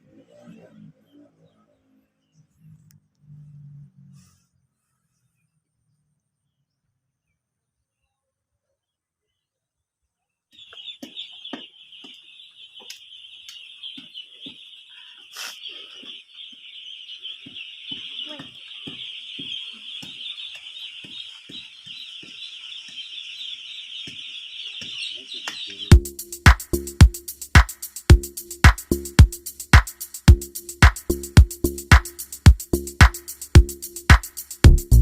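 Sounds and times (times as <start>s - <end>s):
chickens clucking: 10.6s - 25.9s.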